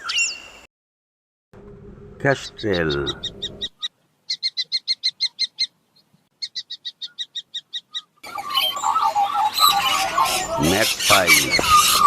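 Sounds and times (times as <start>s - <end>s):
harsh bird chatter: 2.3s - 5.8s, 6.4s - 12.0s.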